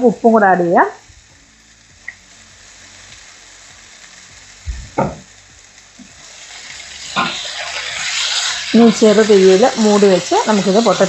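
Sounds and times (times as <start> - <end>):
potatoes sizzling in a pan: 0.0 - 11.0
knocks on a pan: 4.9 - 5.3.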